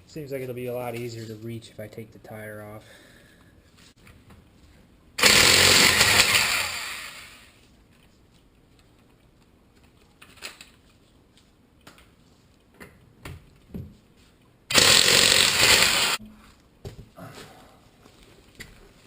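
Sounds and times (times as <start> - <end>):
power tool burst: 5.2 - 7.5, 14.7 - 16.2.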